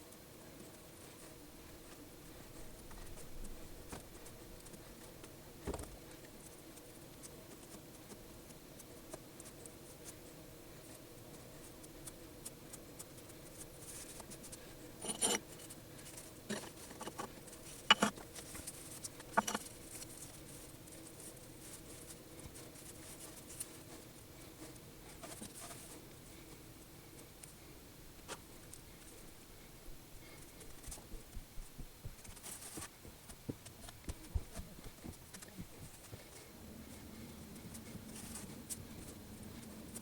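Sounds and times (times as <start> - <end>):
light scratching and rubbing: 13.5 - 26.1.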